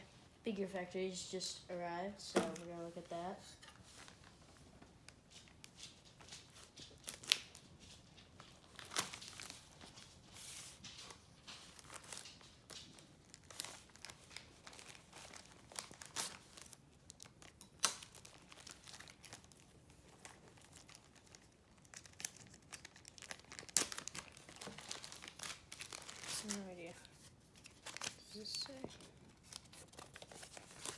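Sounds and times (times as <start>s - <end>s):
packaging crinkling and tearing: 6.4s - 10.3s, 11.0s - 30.9s.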